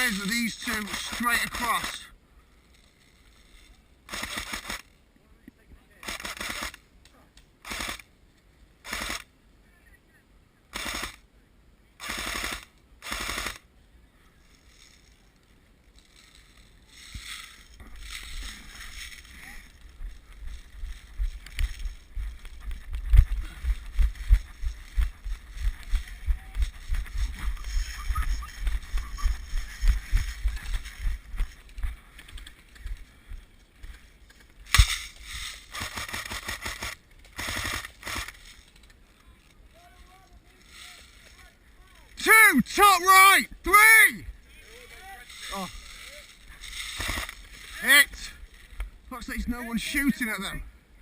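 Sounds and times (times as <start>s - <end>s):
steady hiss: 0.0s - 42.2s, 44.2s - 51.0s
airsoft gunfire bursts: 4.1s - 4.8s, 6.0s - 6.8s, 7.6s - 8.0s, 8.9s - 9.2s, 10.7s - 11.2s, 12.0s - 13.6s, 35.7s - 38.3s, 46.8s - 47.4s
dull low thumps: 19.9s - 32.0s.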